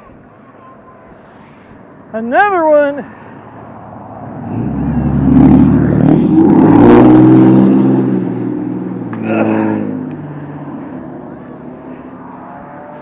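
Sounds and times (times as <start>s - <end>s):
vehicle driving past: 3.3s - 13.0s.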